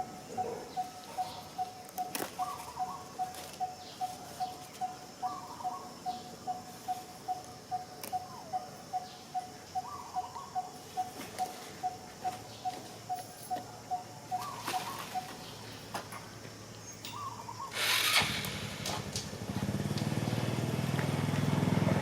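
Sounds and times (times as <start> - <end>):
higher bird calls: 0.0 - 15.8, 17.0 - 18.5.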